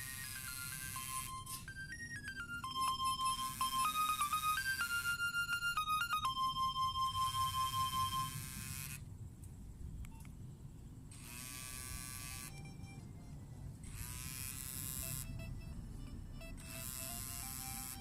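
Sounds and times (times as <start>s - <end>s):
phone vibration buzzing: 0.0s - 9.1s, 11.1s - 18.0s.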